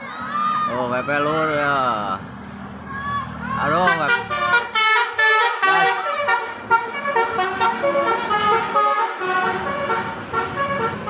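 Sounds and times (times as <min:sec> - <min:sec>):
low rumble of vehicle: 0:00.0 - 0:11.0
bus musical air horn: 0:03.7 - 0:11.0.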